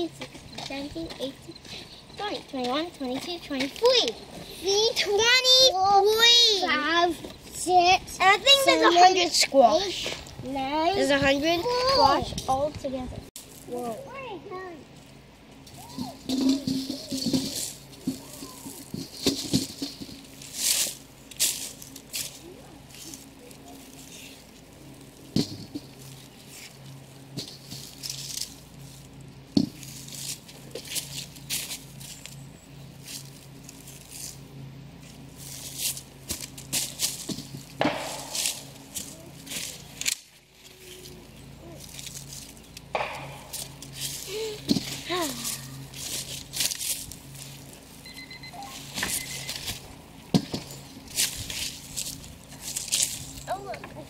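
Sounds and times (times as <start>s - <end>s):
steady low hum: 0.0s - 54.0s
rustling: 14.9s - 53.8s
clattering knocks and rattles: 16.2s - 18.2s, 18.8s - 20.4s.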